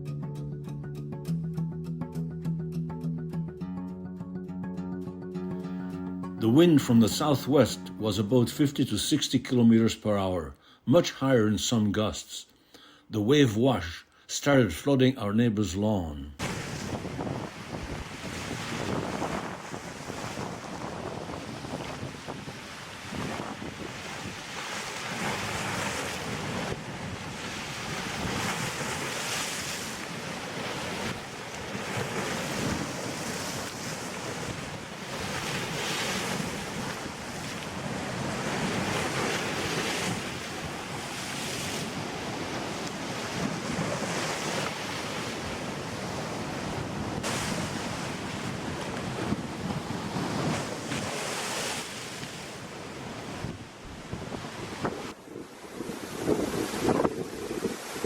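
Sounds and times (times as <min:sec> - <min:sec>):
storm waves breaking: 0:15.9 - 0:58.0
wind buffeting microphone: 0:16.5 - 0:29.0, 0:45.4 - 0:51.2, 0:53.0 - 0:58.0.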